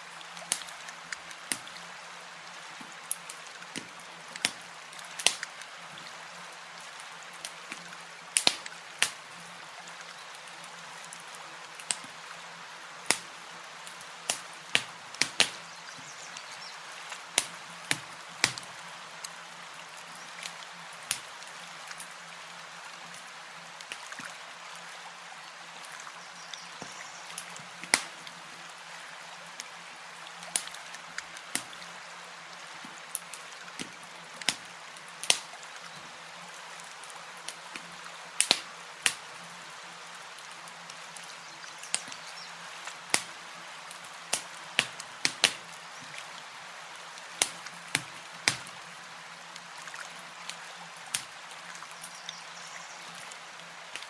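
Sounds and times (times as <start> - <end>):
campfire crackling and popping: 0.4 - 1.8, 2.8 - 6.2, 7.0 - 9.4, 10.4 - 12.2, 13.0 - 22.2, 23.8 - 24.1, 26.6 - 28.4, 30.4 - 31.8, 32.8 - 36.0, 36.8 - 39.5, 40.4 - 46.3, 47.2 - 48.9, 50.4 - 52.4, 53.1 - 54.0.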